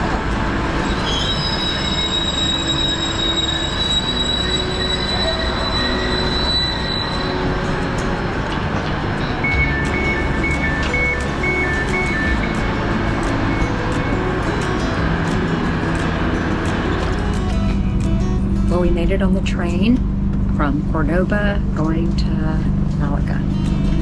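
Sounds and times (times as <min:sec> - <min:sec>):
train rumble: 0:00.0 - 0:24.0
wheel and brake squeal: 0:00.6 - 0:08.0
two-note beeping: 0:09.2 - 0:14.9.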